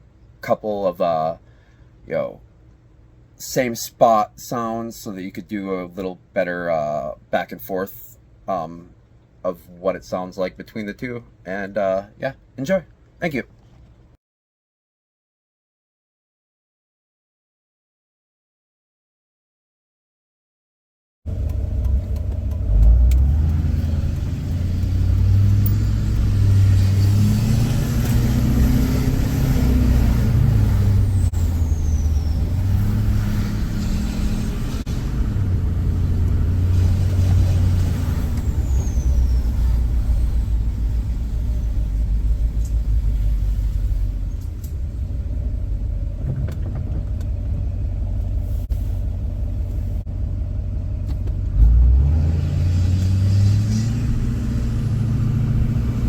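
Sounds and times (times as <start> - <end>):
deep diesel engine rumble: 21.3 - 52.6.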